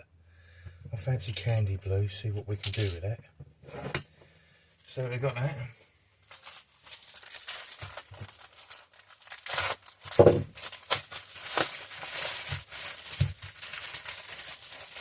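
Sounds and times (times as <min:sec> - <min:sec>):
packaging crinkling and tearing: 0:06.2 - 0:15.0
knock: 0:10.2 - 0:10.5.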